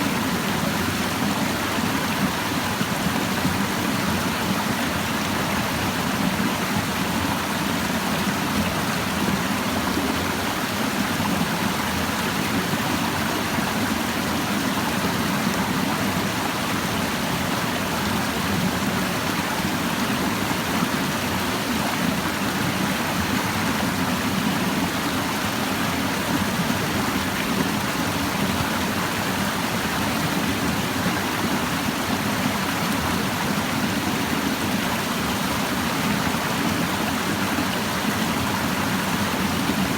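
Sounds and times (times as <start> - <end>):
stream babbling over rocks: 0.0 - 39.9.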